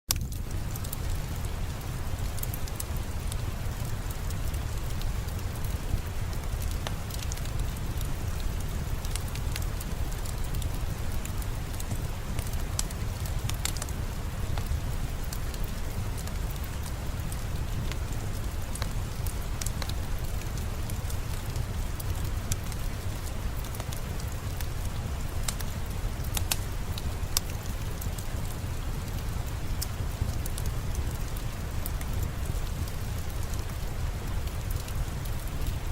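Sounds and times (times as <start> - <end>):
falling rain: 0.1 - 35.9
fireplace fire crackling: 0.1 - 35.9.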